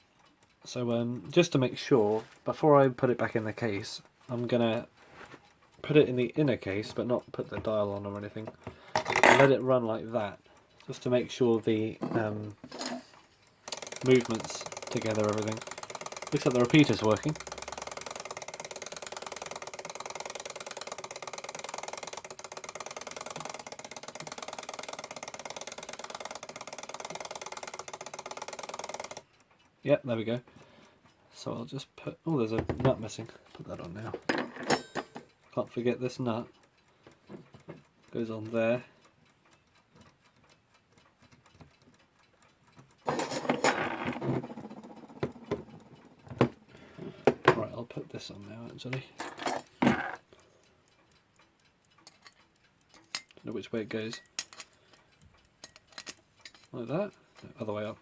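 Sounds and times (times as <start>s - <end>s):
alarm clock ticking: 0.0s - 58.0s
alarm clock bell ringing: 13.7s - 29.2s.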